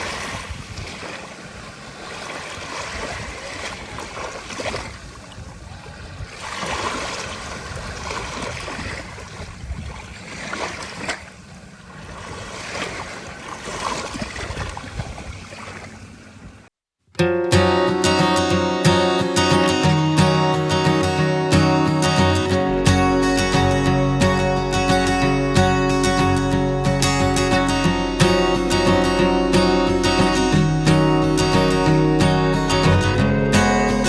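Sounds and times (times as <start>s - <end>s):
sea waves breaking on beach: 0.0s - 16.7s.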